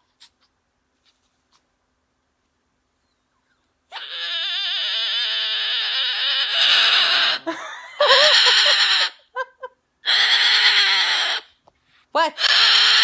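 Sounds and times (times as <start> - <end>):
cockatoo screeching: 3.9 - 9.3, 10.0 - 11.6, 12.4 - 13.0.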